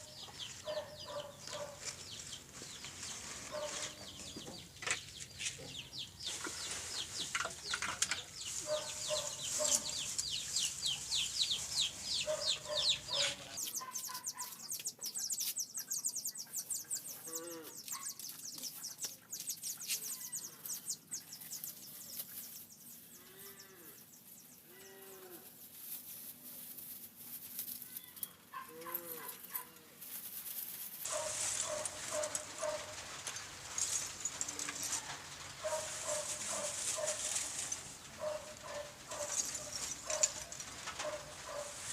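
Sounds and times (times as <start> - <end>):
farm animals calling: 0.0 - 2.3, 8.2 - 25.6, 27.8 - 30.0, 31.0 - 33.1, 33.9 - 41.9.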